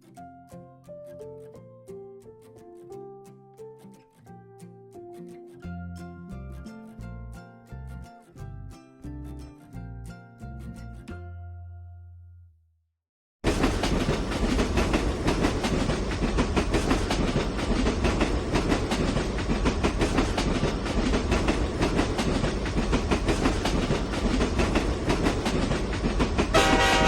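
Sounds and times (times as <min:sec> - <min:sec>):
train rumble with clickety-clack: 0:13.5 - 0:27.0
train horn: 0:26.5 - 0:27.0.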